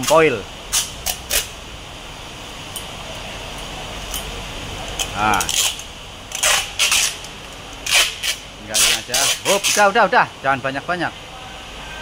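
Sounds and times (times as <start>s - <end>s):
steady low hum: 0.0s - 10.5s
foil tape crinkling: 5.0s - 9.9s.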